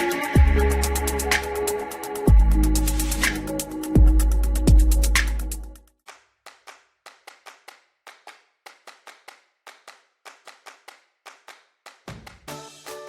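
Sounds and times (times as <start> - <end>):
electronic music with heavy bass: 0.0 - 5.8
sharp clap-like clicks: 6.1 - 12.6.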